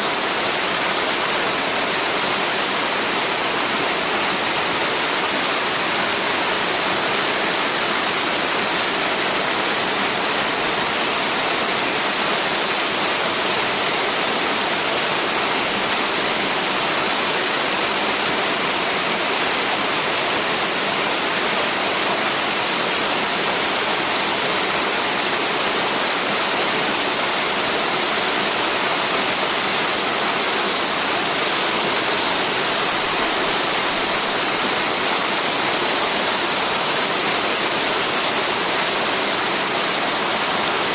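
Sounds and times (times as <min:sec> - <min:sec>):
waterfall rushing: 0:00.0 - 0:40.9.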